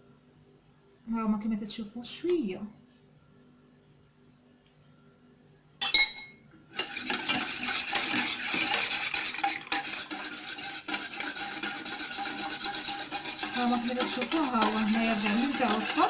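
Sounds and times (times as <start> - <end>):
spoon clinking against a pot: 5.8 - 16.0
spoon stirring and scraping pot: 6.7 - 16.0.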